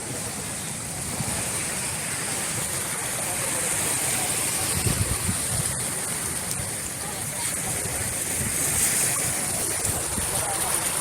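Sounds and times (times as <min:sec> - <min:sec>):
waves washing onto sandy beach: 0:00.0 - 0:11.0.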